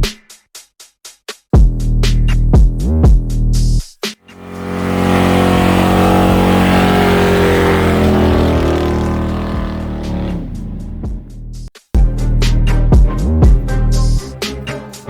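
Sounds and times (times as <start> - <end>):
car engine revs winding down: 4.3 - 11.4.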